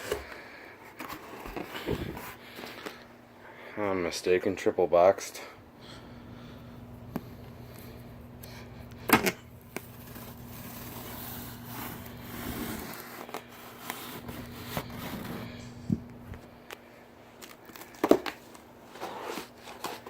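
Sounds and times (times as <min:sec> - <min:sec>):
cardboard boxes rustling: 0:00.0 - 0:02.9, 0:09.8 - 0:15.6, 0:17.7 - 0:20.0
low electrical hum: 0:00.0 - 0:20.0.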